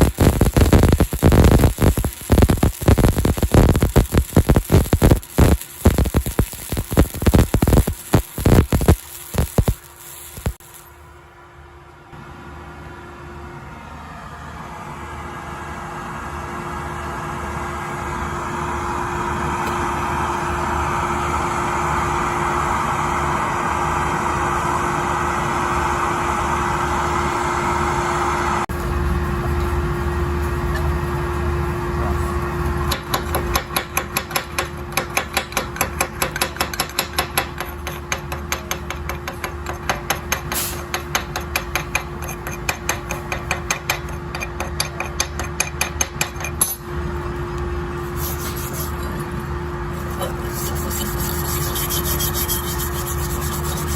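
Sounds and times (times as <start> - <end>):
sharp knocks and crackles: 0.0 - 10.8
welding arc hissing: 0.0 - 10.9, 32.4 - 43.8, 48.1 - 49.1, 49.9 - 53.9
low hum: 0.0 - 16.3.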